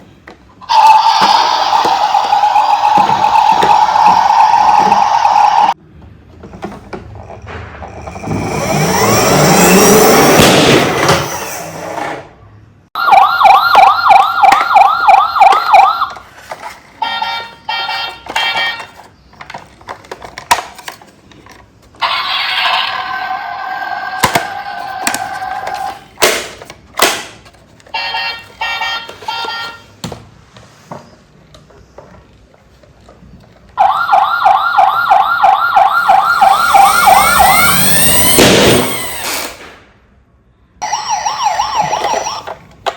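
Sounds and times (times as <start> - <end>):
multi-tone siren: 0.7 - 5.8, 13.0 - 16.2, 33.8 - 39.1, 40.8 - 42.6
toy warbling siren: 0.7 - 5.8, 13.0 - 16.2, 22.0 - 25.8, 33.8 - 39.2, 40.8 - 42.7.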